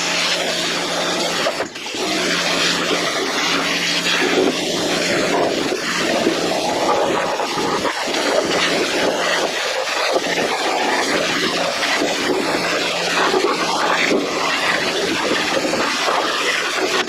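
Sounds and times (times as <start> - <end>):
pressure washer water spray hiss: 0.0 - 17.0.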